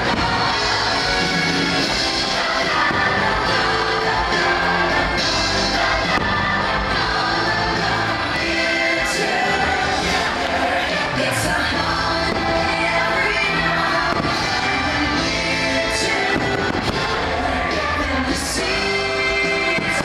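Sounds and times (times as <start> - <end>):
stage show music with singing: 0.0 - 20.0.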